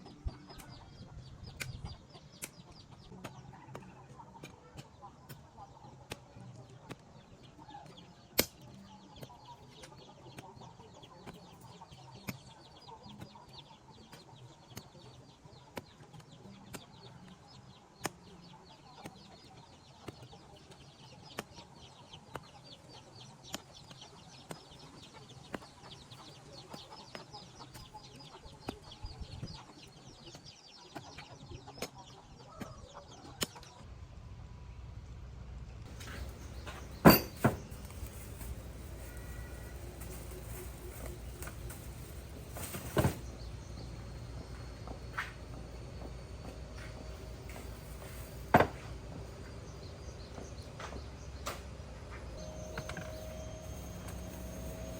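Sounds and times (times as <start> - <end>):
chickens clucking: 35.9 - 54.9.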